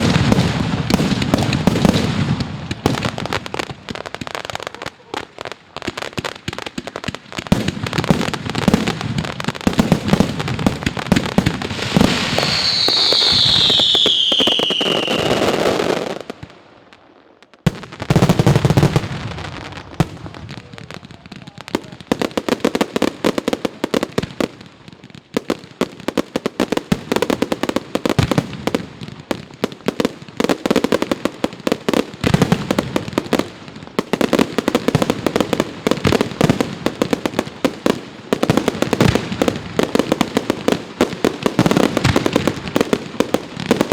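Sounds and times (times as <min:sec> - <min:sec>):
fireworks crackling and popping: 0:00.0 - 0:43.9
falling firework whistle: 0:11.8 - 0:16.2.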